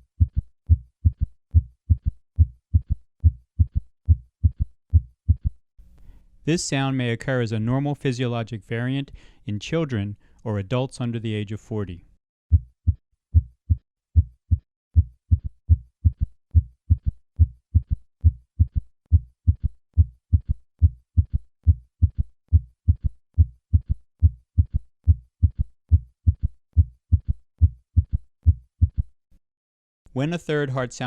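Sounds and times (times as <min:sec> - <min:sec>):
heartbeat in gallop rhythm: 0:00.0 - 0:05.6, 0:12.5 - 0:29.1.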